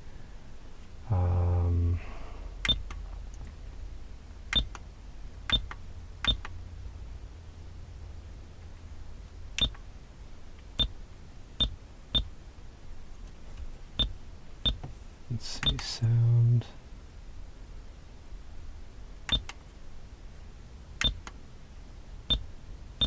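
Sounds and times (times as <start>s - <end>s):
faint low hum: 0.0s - 23.0s
button presses with high beeps: 19.3s - 19.5s.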